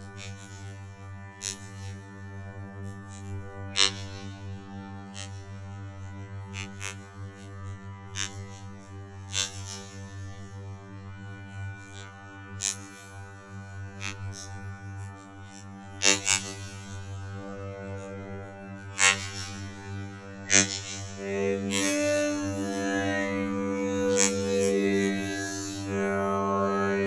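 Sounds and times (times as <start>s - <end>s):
low hum with overtones: 17.4s - 27.0s.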